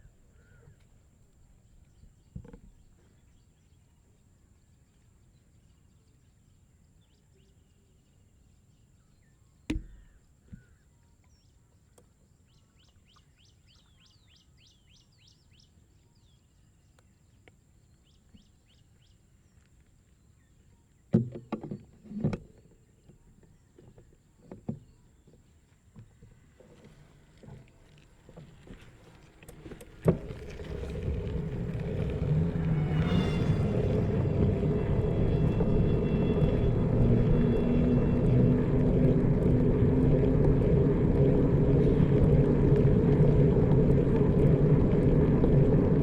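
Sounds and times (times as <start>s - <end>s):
bicycle rolling rumble: 26.0s - 46.0s.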